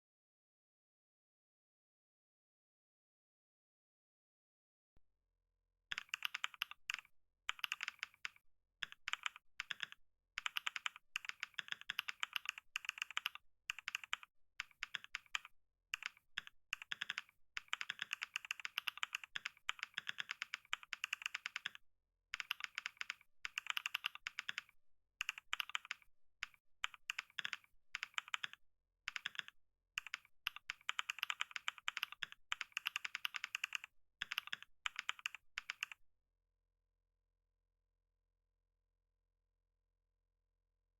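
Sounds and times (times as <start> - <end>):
fast keyboard typing: 5.9 - 21.8, 22.4 - 36.0.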